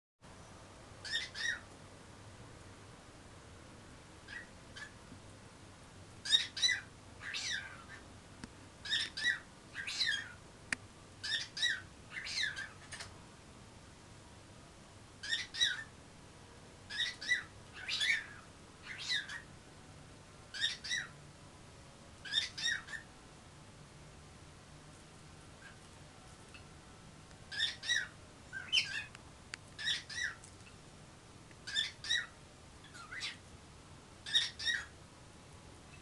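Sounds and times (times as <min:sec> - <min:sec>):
cockatiel chirping: 0:01.0 - 0:01.7, 0:04.3 - 0:05.0, 0:06.2 - 0:08.0, 0:08.8 - 0:10.4, 0:11.2 - 0:13.1, 0:15.2 - 0:15.9, 0:16.9 - 0:19.5, 0:20.5 - 0:21.1, 0:22.2 - 0:23.1, 0:27.5 - 0:29.1, 0:29.8 - 0:30.8, 0:31.6 - 0:33.4, 0:34.2 - 0:34.9.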